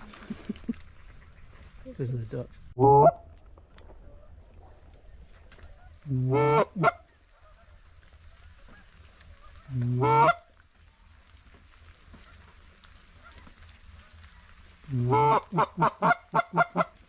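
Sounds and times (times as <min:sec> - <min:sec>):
goose call honking: 0:05.7 - 0:10.5, 0:14.9 - 0:17.0.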